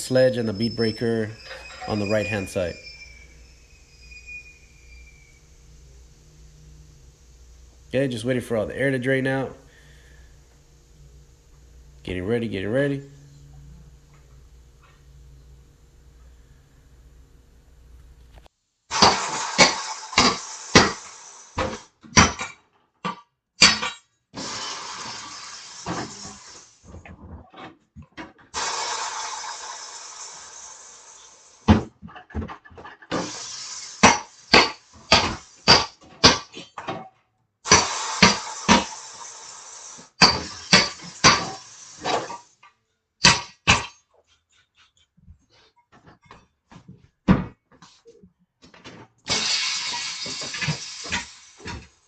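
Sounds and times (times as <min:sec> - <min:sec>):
steady hiss: 0:00.0 - 0:21.8, 0:24.4 - 0:27.0, 0:28.6 - 0:31.8, 0:33.1 - 0:36.5, 0:37.7 - 0:42.6, 0:49.3 - 0:52.0
sledgehammer striking metal: 0:34.0 - 0:36.6.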